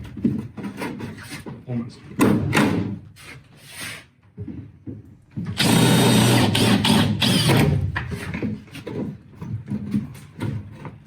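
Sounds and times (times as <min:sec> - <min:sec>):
power drill drilling rivets: 0:05.5 - 0:07.8.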